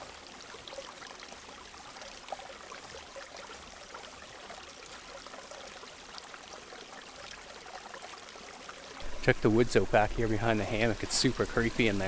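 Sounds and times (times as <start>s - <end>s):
creek water flowing: 0.0s - 12.0s.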